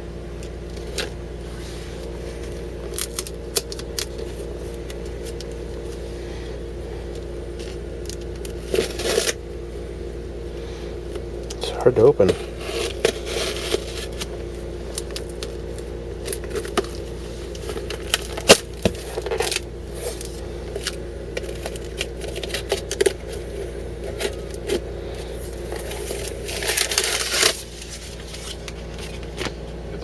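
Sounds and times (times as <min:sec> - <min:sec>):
steady hum: 0:00.0 - 0:30.0
cardboard box being opened: 0:12.3 - 0:15.6, 0:16.2 - 0:29.6.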